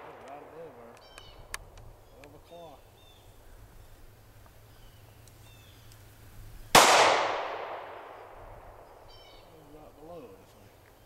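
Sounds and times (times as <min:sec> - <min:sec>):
gunshot with echo: 0:06.8 - 0:08.8.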